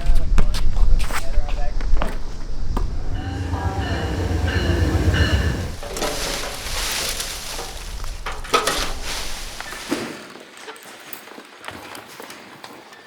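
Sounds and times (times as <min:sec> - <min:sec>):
large vehicle rumbling: 0:02.5 - 0:09.7
steady high-pitched tones: 0:02.8 - 0:06.6
hissing noise: 0:02.8 - 0:08.1.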